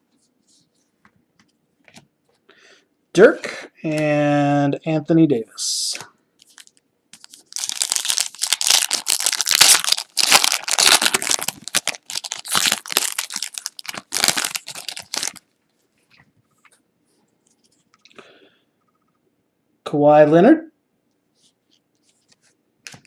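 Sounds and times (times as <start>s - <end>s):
foil wrapper tearing and crinkling: 6.5s - 15.4s.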